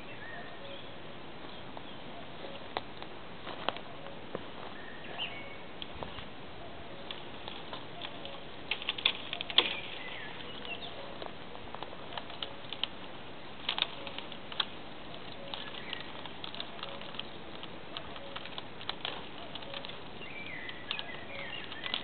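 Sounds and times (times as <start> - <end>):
campfire crackling and popping: 7.0 - 22.0.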